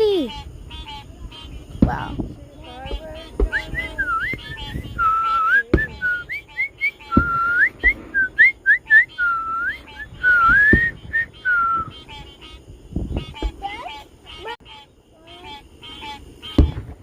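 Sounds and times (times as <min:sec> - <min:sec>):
sharp thumps: 0:01.6 - 0:06.4, 0:07.1 - 0:08.2, 0:10.2 - 0:11.9, 0:12.9 - 0:13.8, 0:16.5 - 0:17.0
person whistling: 0:03.4 - 0:12.0.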